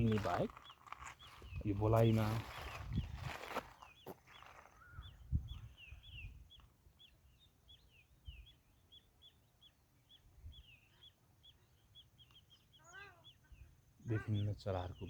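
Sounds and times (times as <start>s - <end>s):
soft footsteps: 0.0s - 4.8s
small birds chirping: 0.0s - 15.0s.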